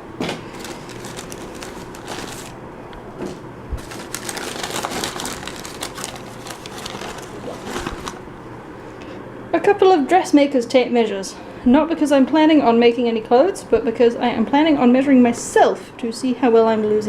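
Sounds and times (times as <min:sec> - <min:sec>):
bag rustling and crinkling: 0:00.2 - 0:02.6, 0:03.7 - 0:08.3.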